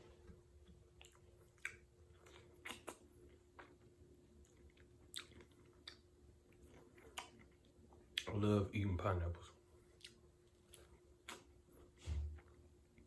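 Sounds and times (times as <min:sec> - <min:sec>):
faint steady hum: 0:00.0 - 0:13.0
wet chewing mouth smacks: 0:01.0 - 0:03.8, 0:04.5 - 0:08.3, 0:10.0 - 0:11.6.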